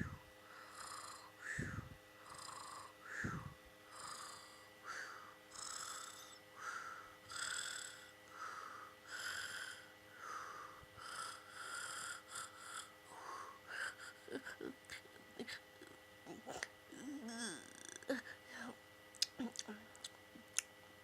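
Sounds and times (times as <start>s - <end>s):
cat snoring: 0.6s - 1.3s, 2.2s - 3.0s, 3.9s - 4.7s, 5.5s - 6.4s, 7.3s - 8.2s, 9.1s - 13.0s, 17.0s - 18.1s.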